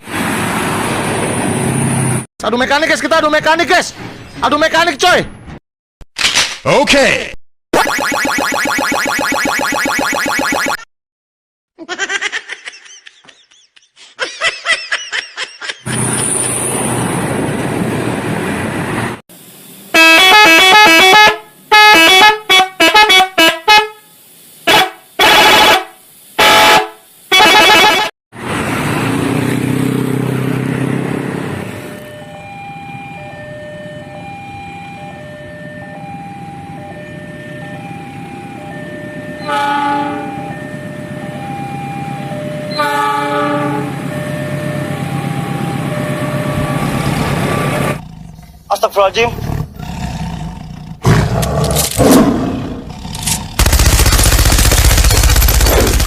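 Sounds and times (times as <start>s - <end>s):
bus air horns: 19.9s - 28.1s, 39.4s - 40.4s, 42.7s - 44.2s.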